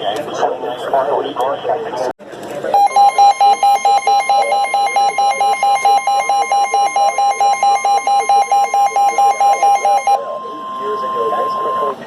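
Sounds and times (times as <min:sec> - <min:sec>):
rapid loud beeping alarm: 0:02.8 - 0:12.0
steady warning alarm tone: 0:02.8 - 0:12.0.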